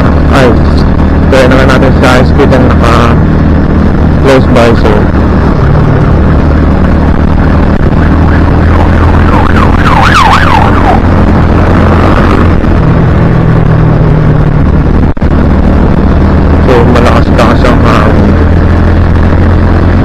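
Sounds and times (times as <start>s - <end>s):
heavy wind noise: 0.0s - 20.0s
motorcycle engine hum: 0.0s - 20.0s
siren-like yelping tone: 7.8s - 12.3s.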